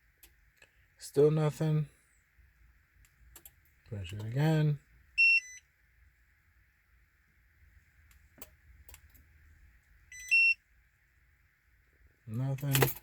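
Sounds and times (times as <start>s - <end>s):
two-tone electronic beep: 5.2s - 5.6s, 10.2s - 10.6s.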